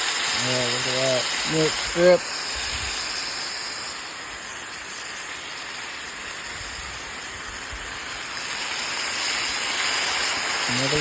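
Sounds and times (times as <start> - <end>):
steaks sizzling on a griddle: 0.0 - 11.0.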